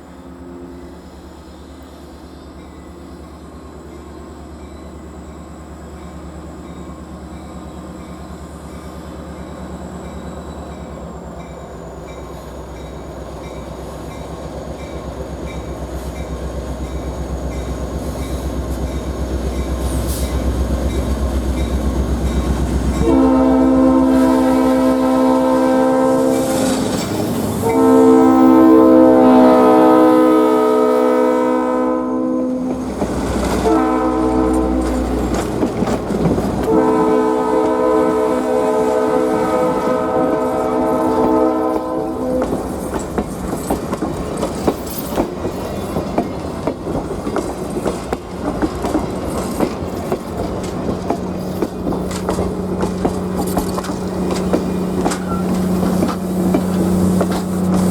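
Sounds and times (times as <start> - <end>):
diesel train rumble: 0.0 - 57.9
train air horn chord: 22.9 - 32.8, 33.4 - 35.3, 36.6 - 42.8
wheels clicking over rail joints: 34.4 - 36.8, 41.8 - 57.9.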